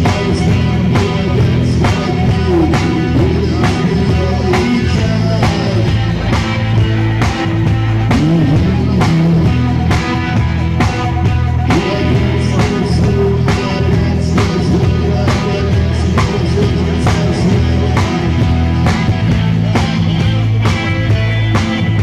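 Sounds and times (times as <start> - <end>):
bass guitar: 0.0 - 22.0
drums steady beat: 0.0 - 22.0
electric guitar: 0.0 - 22.0.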